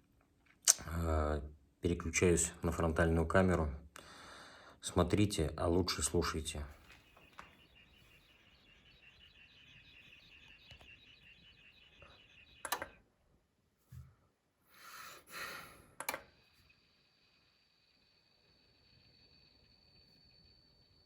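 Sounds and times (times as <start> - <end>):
power amplifier whistling: 6.9 - 13.0, 16.3 - 21.0
sharp clicks: 12.5 - 13.0, 16.0 - 16.4.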